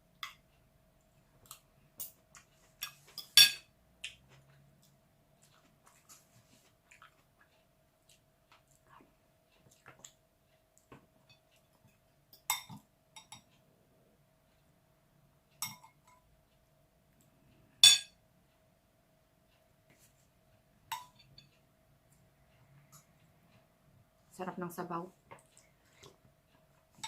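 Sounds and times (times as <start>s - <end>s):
utensils clinking against dish: 2.8s - 3.7s.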